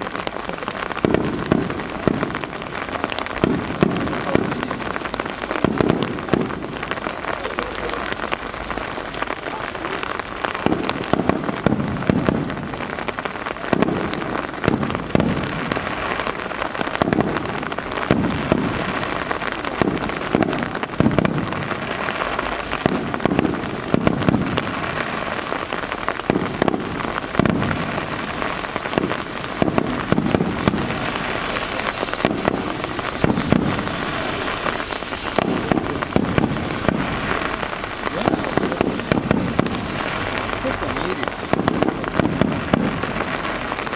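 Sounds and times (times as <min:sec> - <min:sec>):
steady rain: 0:00.0 - 0:43.9
raindrops ticking sharply: 0:22.3 - 0:43.6.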